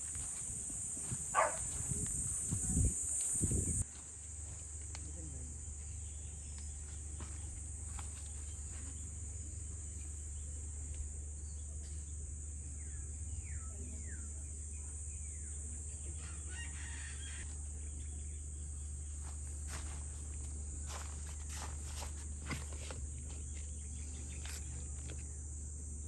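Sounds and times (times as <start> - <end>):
high-pitched insect drone: 0.0 - 4.6
rooster crowing: 16.3 - 17.5.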